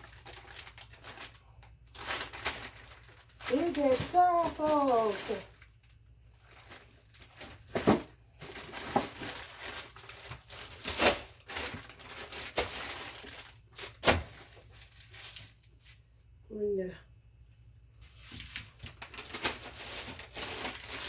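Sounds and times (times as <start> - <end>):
plastic bag crinkling: 0.0 - 16.0, 18.0 - 21.0.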